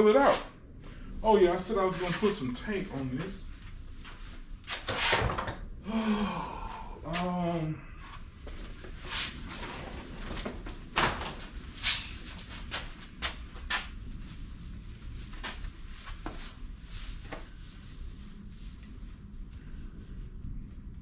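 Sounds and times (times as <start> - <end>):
low steady hum: 5.5 - 21.0.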